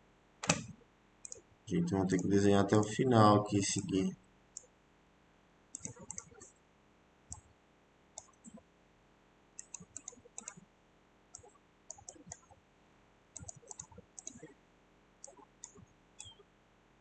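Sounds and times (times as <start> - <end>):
computer mouse clicks: 0.4 - 1.5, 5.7 - 6.6, 7.3 - 7.5, 8.2 - 8.6, 9.6 - 10.6, 11.3 - 12.6, 13.4 - 14.5, 15.2 - 16.4.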